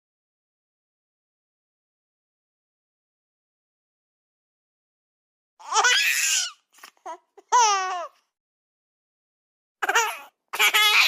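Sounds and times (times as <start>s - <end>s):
high-pitched baby-like cries: 5.6s - 8.2s, 9.8s - 11.0s.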